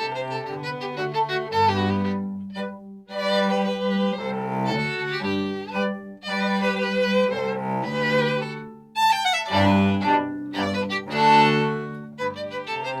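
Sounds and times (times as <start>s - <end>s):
string orchestra playing: 0.0s - 13.0s.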